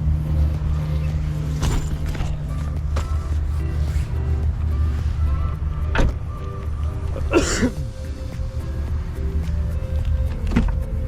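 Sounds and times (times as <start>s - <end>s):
steady low hum: 0.0s - 11.0s
person clearing throat: 7.3s - 7.8s.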